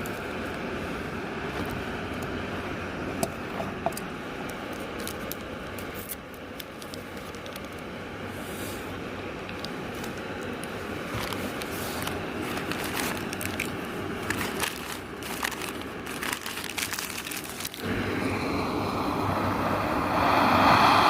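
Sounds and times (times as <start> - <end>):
crinkling handling sounds: 0.0 - 17.9
rush of wind or water: 17.8 - 21.0
steady hiss: 17.8 - 21.0.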